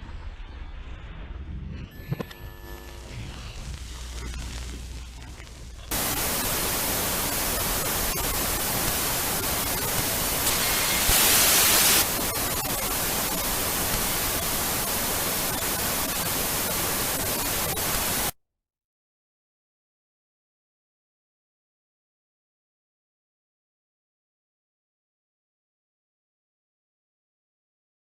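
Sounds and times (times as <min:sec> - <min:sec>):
faint low rumble: 0:00.0 - 0:06.0
loud static hiss: 0:01.9 - 0:18.4.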